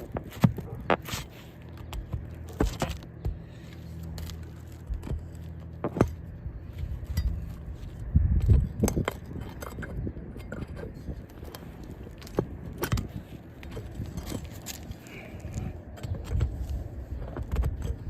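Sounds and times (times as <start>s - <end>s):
low hum: 0.0s - 18.0s
metal tool scraping on shingles: 0.0s - 18.0s.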